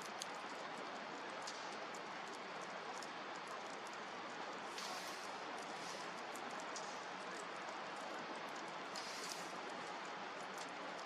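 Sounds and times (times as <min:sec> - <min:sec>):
campfire crackling: 0:00.0 - 0:11.0
fire hiss: 0:04.7 - 0:06.2, 0:08.9 - 0:09.6.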